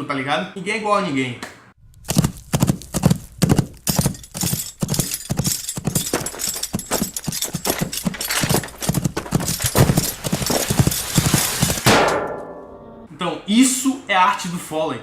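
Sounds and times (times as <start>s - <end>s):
footsteps on hard surface: 2.0s - 11.8s.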